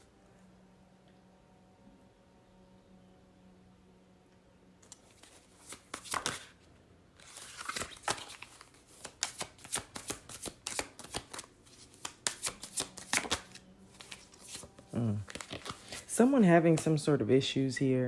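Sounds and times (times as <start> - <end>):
playing cards being shuffled: 4.8 - 6.6, 7.2 - 16.9.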